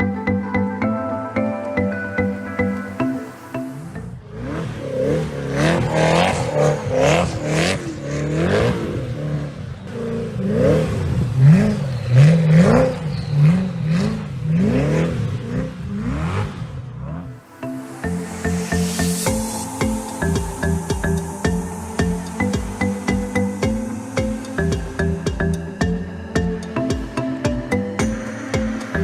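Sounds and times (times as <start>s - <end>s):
sports car engine revving: 4.2s - 17.3s.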